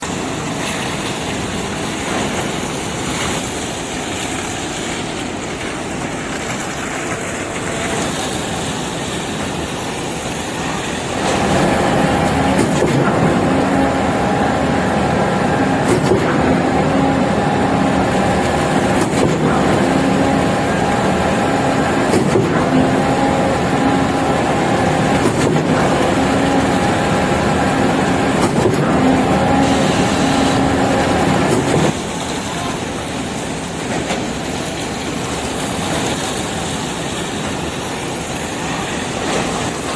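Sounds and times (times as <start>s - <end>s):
heavy machinery running: 0.0s - 39.9s
humming engine tone: 11.2s - 32.0s.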